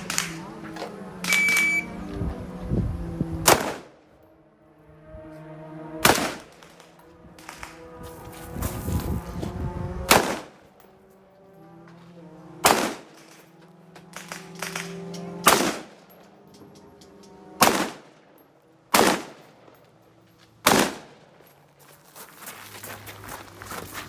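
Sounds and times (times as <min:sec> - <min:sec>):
rifle shots cracking: 0:00.0 - 0:00.6, 0:03.4 - 0:04.1, 0:06.0 - 0:07.8, 0:10.1 - 0:10.7, 0:12.6 - 0:13.5, 0:14.1 - 0:16.1, 0:17.6 - 0:18.2, 0:18.9 - 0:19.8, 0:20.6 - 0:21.3.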